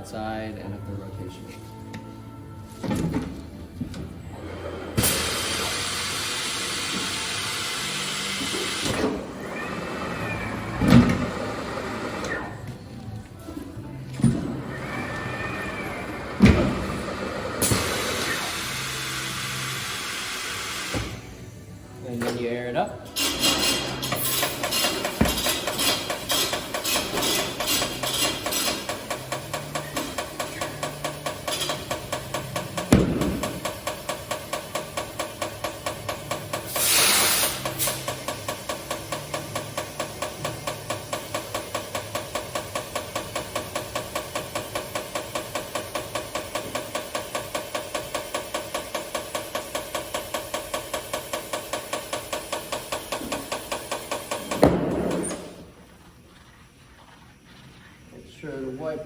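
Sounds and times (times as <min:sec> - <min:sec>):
tire changer machine humming: 0:00.0 - 0:58.2
air hissing: 0:04.6 - 0:09.3, 0:14.3 - 0:22.4, 0:23.2 - 0:56.0
air hissing into tire: 0:17.6 - 0:21.4, 0:36.6 - 0:40.1.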